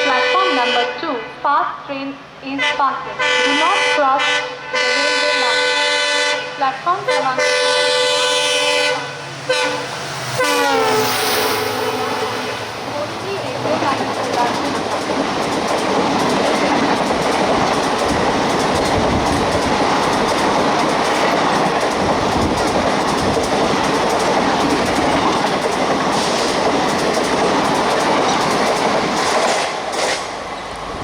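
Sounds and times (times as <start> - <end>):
train coaches rushing past: 3.2 - 31.0
wheels clattering over rail joints: 12.8 - 30.7.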